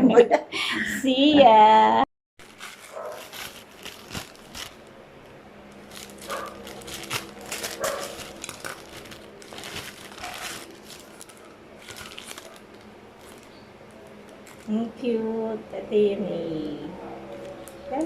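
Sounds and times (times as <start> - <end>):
plastic packaging crinkling: 2.4 - 14.8, 17.2 - 18.0.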